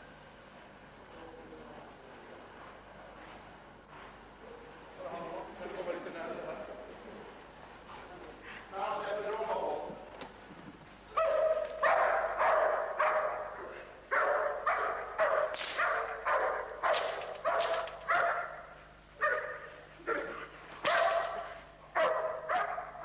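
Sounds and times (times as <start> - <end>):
dog barking: 11.1 - 23.0.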